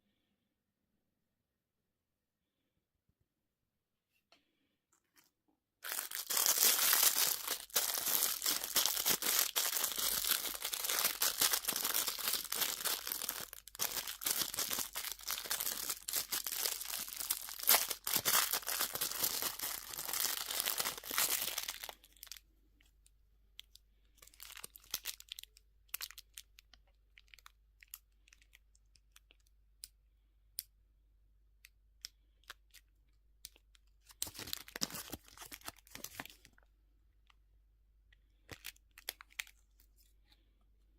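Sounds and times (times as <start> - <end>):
candy wrapper crinkling: 5.8 - 22.9, 23.6 - 29.9, 31.6 - 36.7, 38.3 - 40.2.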